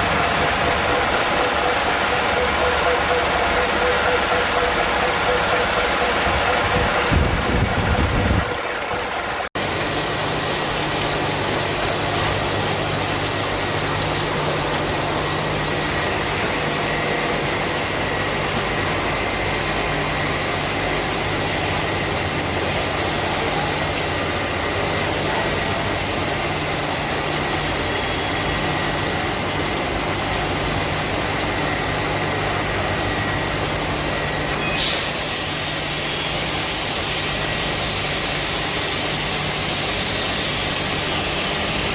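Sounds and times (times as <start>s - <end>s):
higher whine: 0.0s - 22.2s
high whine: 0.0s - 25.4s
machine tool running: 0.0s - 29.5s, 32.8s - 41.9s.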